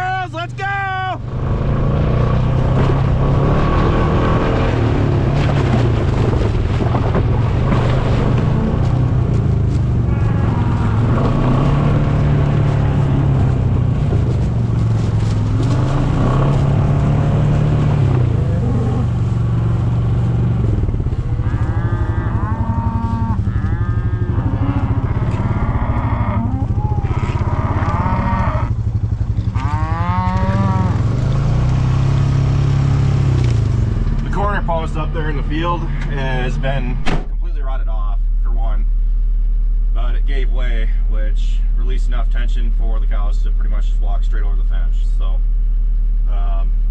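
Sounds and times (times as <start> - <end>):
utility vehicle engine humming: 0.0 - 46.9
cattle mooing: 8.1 - 9.1, 10.0 - 13.6, 15.0 - 20.3, 21.2 - 28.8, 29.4 - 31.8.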